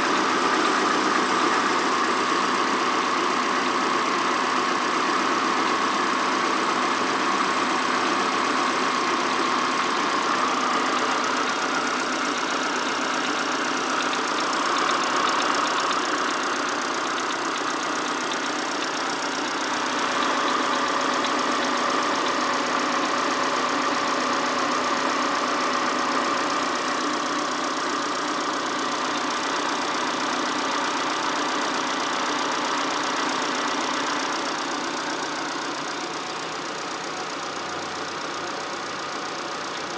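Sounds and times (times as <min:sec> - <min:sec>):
car engine idling with a knock: 0:10.9 - 0:23.3.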